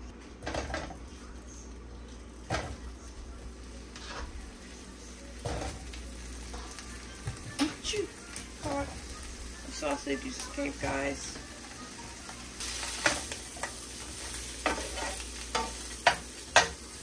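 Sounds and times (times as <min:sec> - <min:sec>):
sausages sizzling in a frying pan: 0:00.0 - 0:17.0
knocks and clatters in a pan: 0:00.4 - 0:01.1, 0:02.5 - 0:02.9, 0:05.4 - 0:07.9, 0:12.9 - 0:17.0.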